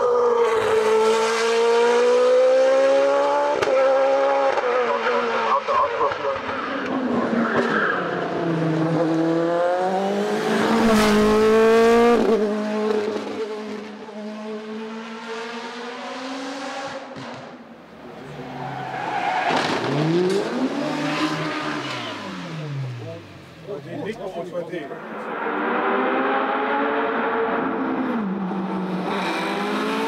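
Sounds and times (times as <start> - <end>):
race car engines at full throttle: 0.0 - 30.0.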